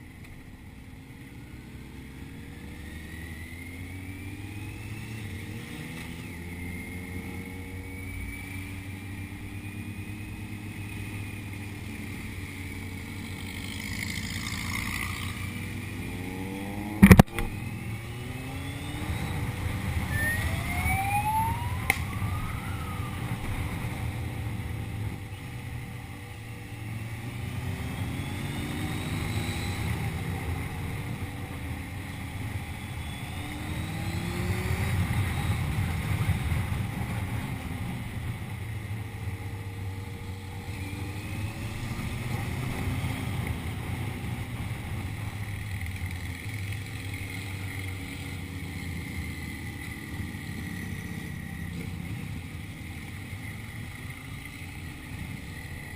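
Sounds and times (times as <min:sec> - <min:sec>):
faint whistles: 0:18.6 - 0:20.8, 0:32.1 - 0:34.2.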